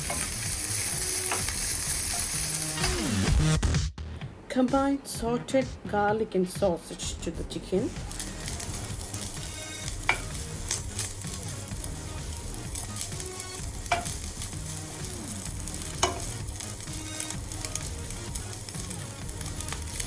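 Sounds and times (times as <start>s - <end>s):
utensil clicking against pan: 0.0s - 2.0s, 8.1s - 11.9s, 12.6s - 20.0s
food sizzling in a pan: 0.0s - 3.3s, 7.9s - 20.0s.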